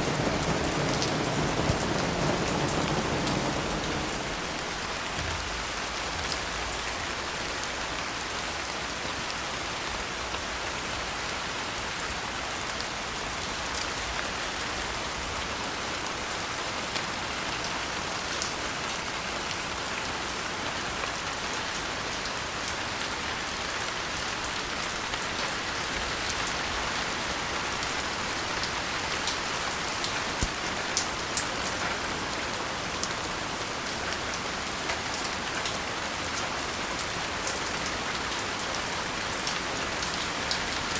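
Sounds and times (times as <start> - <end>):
raindrops tapping a surface: 0.0 - 8.0, 22.6 - 40.9
steady rain hiss: 0.0 - 40.9.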